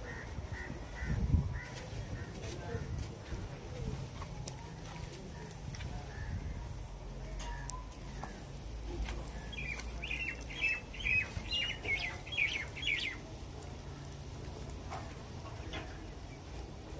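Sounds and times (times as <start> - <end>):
small bird chirping: 9.5 - 13.2.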